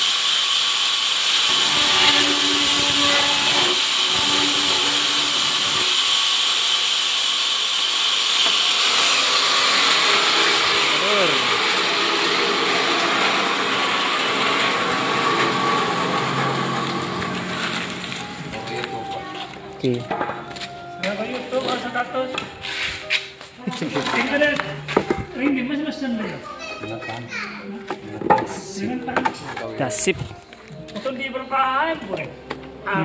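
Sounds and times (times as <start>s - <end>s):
band sawmill whirring: 0.0s - 20.0s.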